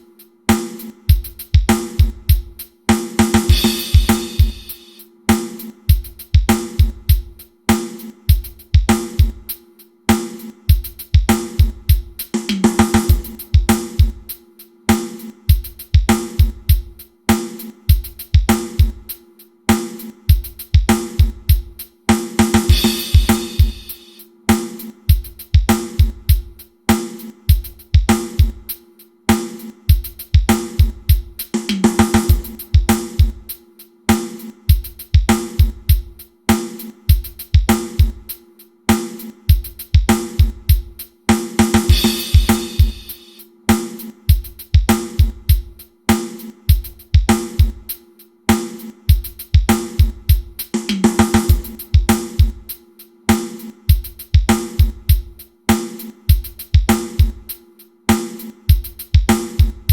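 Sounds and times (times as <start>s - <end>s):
hi-hat: 0.0s - 59.9s
kick drum: 1.1s - 2.6s, 3.5s - 4.7s, 5.9s - 7.4s, 8.3s - 9.5s, 10.7s - 14.4s, 15.5s - 17.0s, 17.9s - 19.1s, 20.3s - 21.9s, 22.7s - 23.9s, 25.1s - 26.6s, 27.5s - 28.7s, 29.9s - 31.5s, 32.2s - 33.5s, 34.7s - 36.2s, 37.1s - 38.3s, 39.5s - 41.1s, 41.9s - 43.1s, 44.3s - 45.8s, 46.7s - 47.9s, 49.1s - 50.7s, 51.4s - 52.8s, 53.9s - 55.4s, 56.3s - 57.5s, 58.7s - 59.9s.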